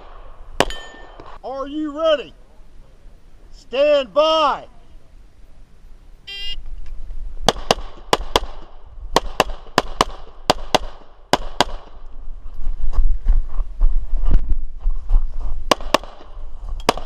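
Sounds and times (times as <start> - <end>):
pistol shots: 7.5 - 12.0, 15.7 - 17.0.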